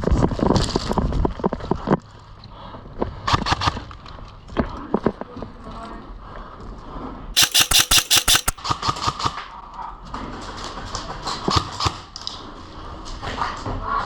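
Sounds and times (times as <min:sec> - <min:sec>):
airsoft rifle firing: 0:07.4 - 0:08.6
clicks: 0:07.4 - 0:08.6.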